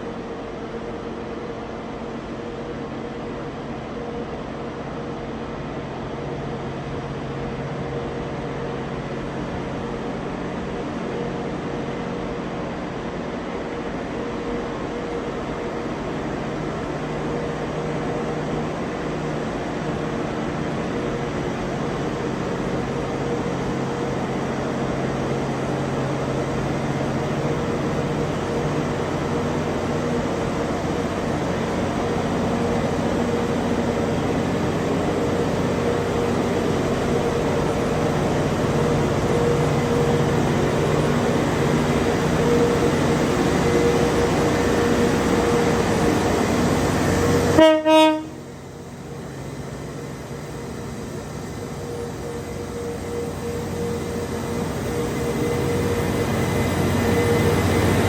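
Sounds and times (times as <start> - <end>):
train passing close by: 0.0 - 58.0
train horn blast: 47.5 - 48.6.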